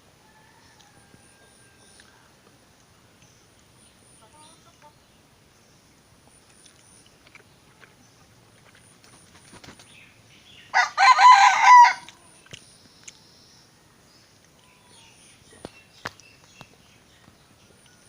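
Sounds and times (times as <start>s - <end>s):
rooster crowing: 0.2s - 2.0s, 10.7s - 12.2s.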